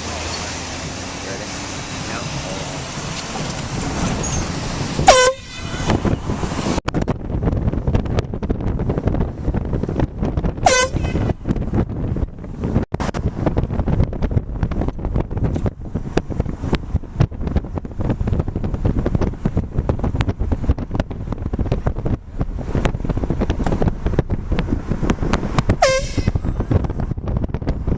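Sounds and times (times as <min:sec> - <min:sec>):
wind buffeting microphone: 0:00.6 - 0:27.9
air horn blast: 0:05.0 - 0:06.0, 0:10.6 - 0:11.3, 0:25.8 - 0:26.4.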